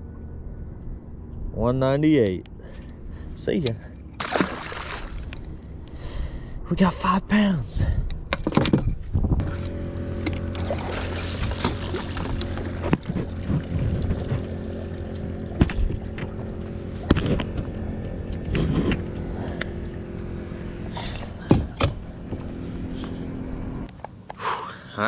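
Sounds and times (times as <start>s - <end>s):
boat motor humming: 9.4s - 25.0s.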